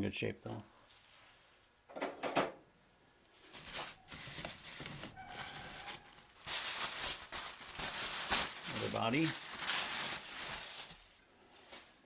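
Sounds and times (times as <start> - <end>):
tools knocking: 1.9 - 2.6
packing paper crinkling: 3.4 - 12.0.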